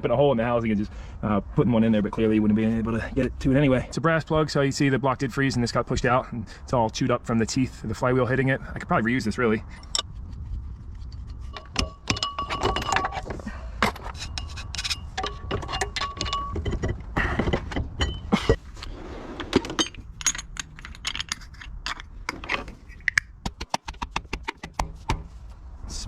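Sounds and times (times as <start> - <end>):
metal tools clinking: 9.7 - 10.1, 11.4 - 18.6, 19.4 - 23.2.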